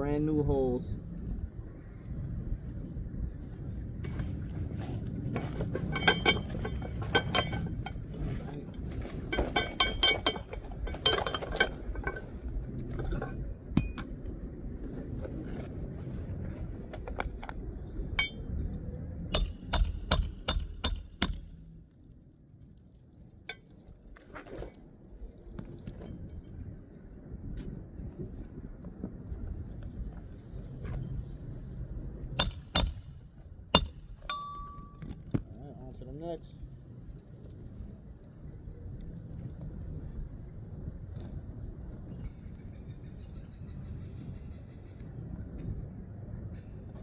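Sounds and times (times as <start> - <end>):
hammer striking metal tool: 5.9 - 8.0, 9.4 - 11.8, 13.8 - 14.1, 18.2 - 18.4, 19.3 - 21.7, 32.4 - 35.0.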